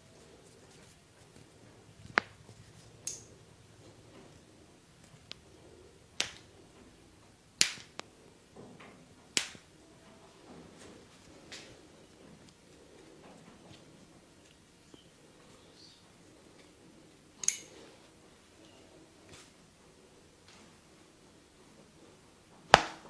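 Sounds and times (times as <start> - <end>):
joints cracking during massage: 0.2 - 9.7.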